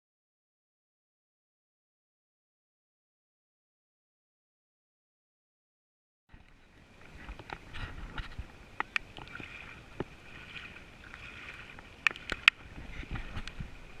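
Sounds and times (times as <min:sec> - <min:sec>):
paddle strokes splashing: 0:06.3 - 0:14.0.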